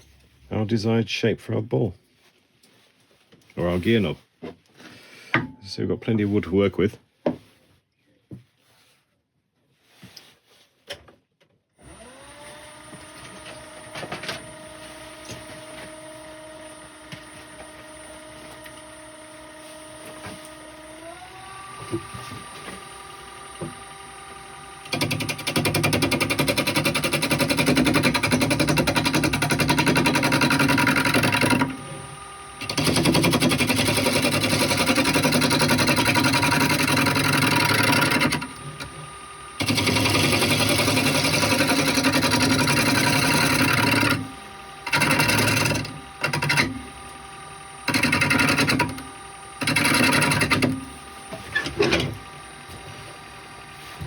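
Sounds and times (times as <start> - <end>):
turning tool cutting wood: 11.8 - 54.0
wood lathe humming: 11.8 - 54.0.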